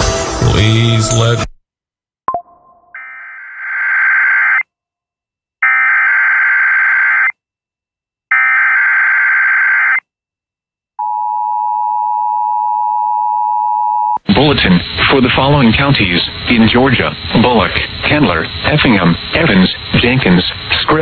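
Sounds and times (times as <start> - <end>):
data bursts: 14.3 - 21.0.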